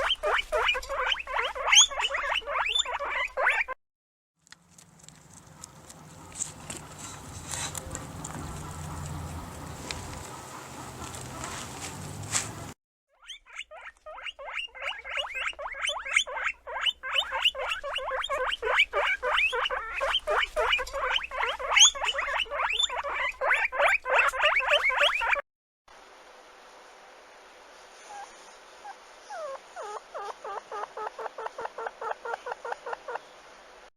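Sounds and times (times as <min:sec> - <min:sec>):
small animals squeaking: 0:00.0 - 0:03.8, 0:13.1 - 0:25.4, 0:28.1 - 0:33.2.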